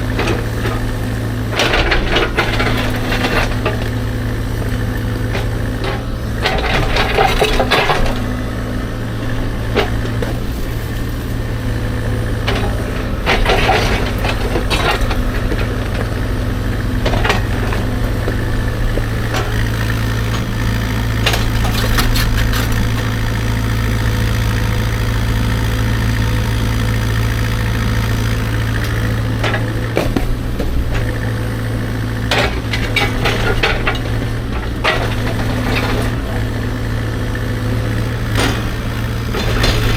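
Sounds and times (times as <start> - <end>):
diesel engine running: 0.0 - 39.9
bucket scraping and clanking rocks: 1.5 - 4.2, 5.0 - 8.3, 12.0 - 23.4, 32.3 - 36.4, 38.2 - 39.9.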